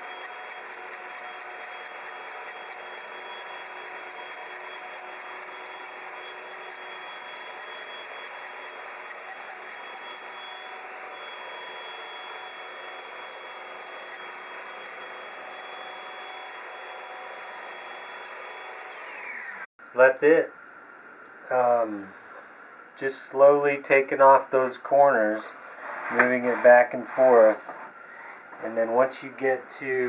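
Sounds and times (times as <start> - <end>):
table saw whining: 0.0 - 19.7.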